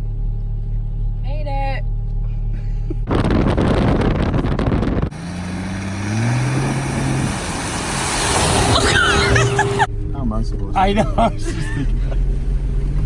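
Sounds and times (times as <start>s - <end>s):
car engine running: 0.0s - 13.0s
loud rushing noise: 3.1s - 9.9s.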